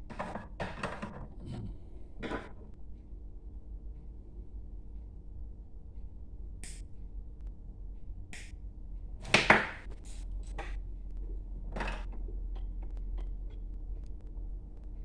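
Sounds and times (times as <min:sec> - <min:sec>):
tools and wires clattering: 0:00.0 - 0:01.6, 0:11.6 - 0:13.7
steady low hum: 0:00.0 - 0:15.0.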